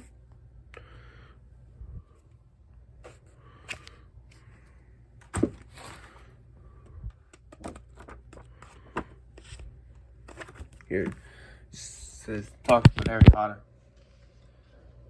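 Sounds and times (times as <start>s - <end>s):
magazine thump: 5.3s - 5.7s
paper rustling: 5.3s - 6.3s, 7.6s - 11.1s.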